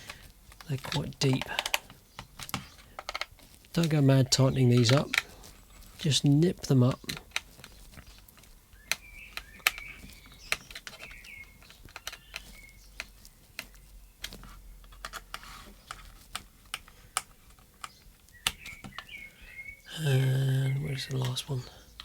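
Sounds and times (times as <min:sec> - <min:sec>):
screwdriver clicking and scraping: 0:07.0 - 0:19.1.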